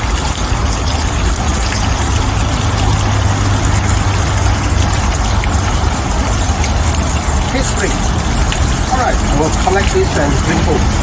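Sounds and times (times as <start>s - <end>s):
water rushing: 0.0s - 11.0s.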